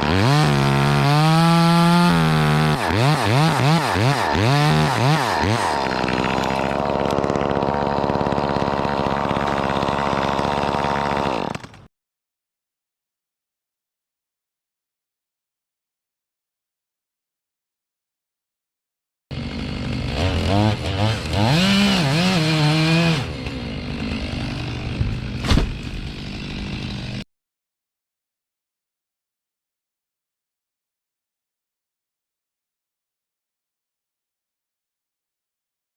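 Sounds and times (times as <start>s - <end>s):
chainsaw engine idling: 0.0s - 11.9s, 19.3s - 27.2s
sharp knock: 25.4s - 25.9s.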